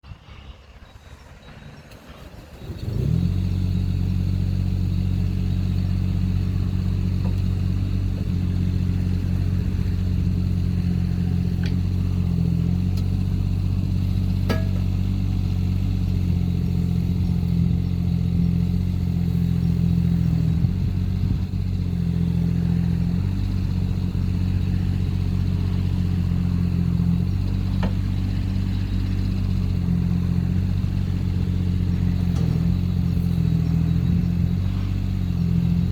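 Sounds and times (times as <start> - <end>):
diesel engine running: 0.0 - 35.9.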